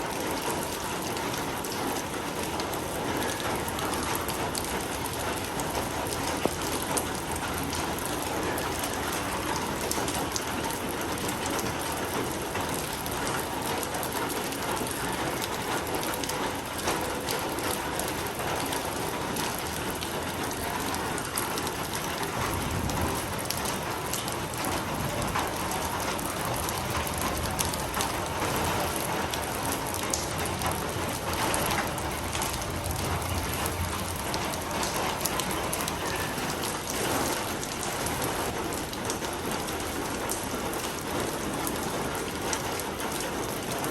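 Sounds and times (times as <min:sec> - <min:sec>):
rain falling: 0:00.0 - 0:43.9
raindrops pattering: 0:00.0 - 0:43.9.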